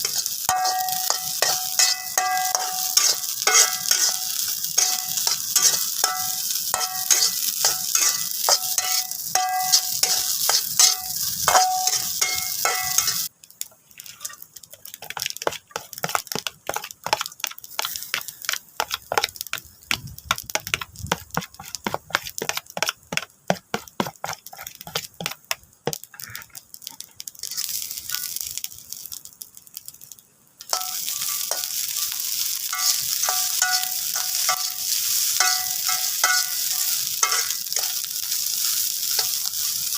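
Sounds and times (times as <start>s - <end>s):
spatula stirring and clinking on pan: 0.0s - 13.3s, 14.0s - 26.0s, 30.6s - 39.9s
food sizzling in a pan: 0.0s - 39.9s.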